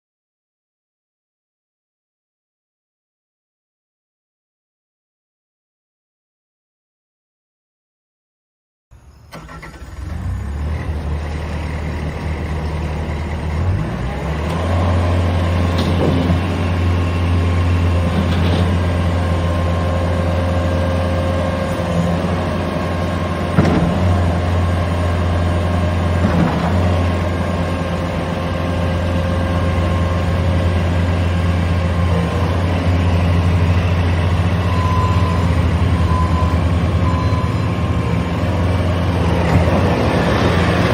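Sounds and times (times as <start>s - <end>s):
diesel engine running: 9.3s - 40.9s.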